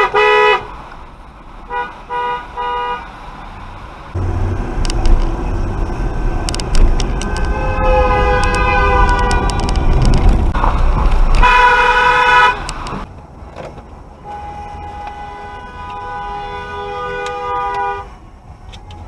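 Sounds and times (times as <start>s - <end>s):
vehicle horns honking: 0.0s - 0.7s, 1.7s - 3.1s, 6.0s - 10.4s, 11.4s - 13.0s, 14.2s - 18.2s
low road rumble: 0.0s - 19.0s.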